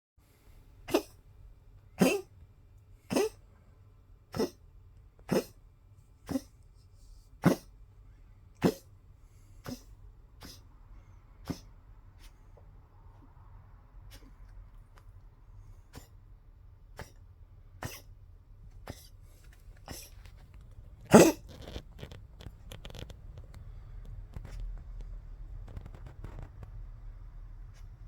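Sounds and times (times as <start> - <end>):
dog coughing: 0.9 - 1.2, 2.0 - 2.3, 3.0 - 3.4, 4.3 - 4.6, 5.2 - 5.6, 6.2 - 6.6, 7.4 - 7.7, 8.6 - 8.9, 9.6 - 10.7, 11.4 - 11.7, 14.1 - 14.4, 15.9 - 16.1, 17.0 - 17.2, 17.8 - 18.1, 18.8 - 21.8.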